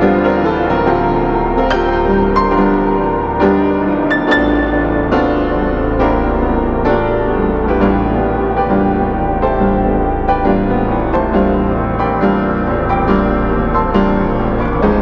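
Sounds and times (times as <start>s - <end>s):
piano background music: 0.0s - 15.0s
low bass note: 1.0s - 11.8s.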